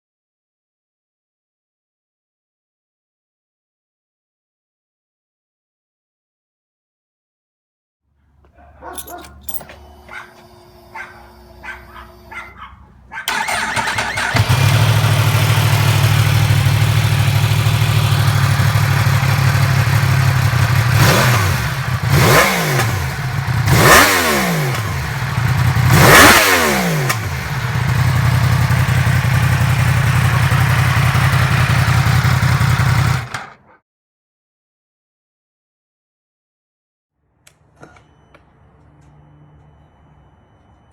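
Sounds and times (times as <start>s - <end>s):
motorcycle engine idling and revving: 8.9s - 33.7s.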